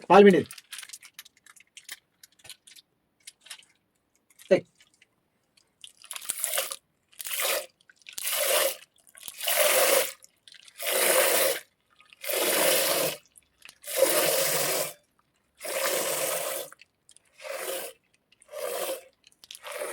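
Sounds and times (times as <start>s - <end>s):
liquid squirting into container: 4.3s - 19.9s.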